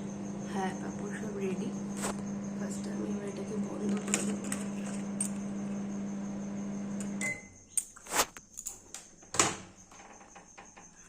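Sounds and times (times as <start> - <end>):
microwave oven humming: 0.0 - 7.6.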